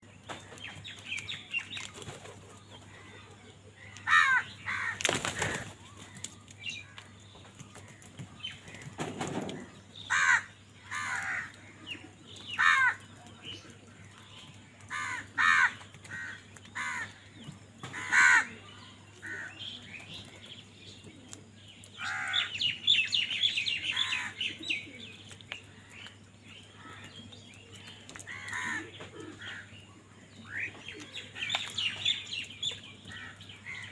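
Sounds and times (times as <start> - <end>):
crows cawing: 3.9 - 5.7, 10.1 - 11.6, 12.6 - 13.0, 14.9 - 17.2, 17.8 - 18.6, 22.0 - 22.5, 28.2 - 29.6.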